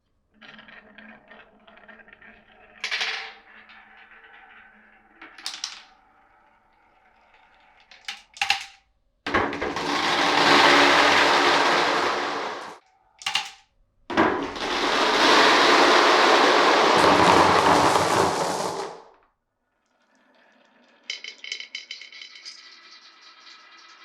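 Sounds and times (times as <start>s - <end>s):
marbles rumbling along track: 9.4s - 12.8s, 14.2s - 19.1s, 21.0s - 24.0s
marbles clattering: 9.8s - 12.8s, 14.4s - 19.1s, 21.1s - 23.0s
marbles clicking and rattling: 14.6s - 19.0s, 21.1s - 23.0s.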